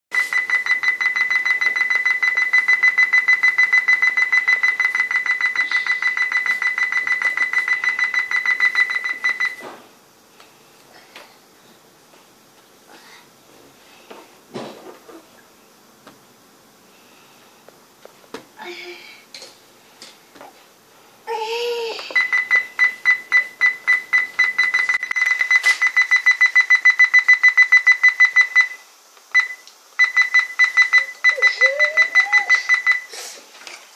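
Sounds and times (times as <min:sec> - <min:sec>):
rapid high laptop beeps: 0:00.1 - 0:09.6, 0:22.2 - 0:33.1.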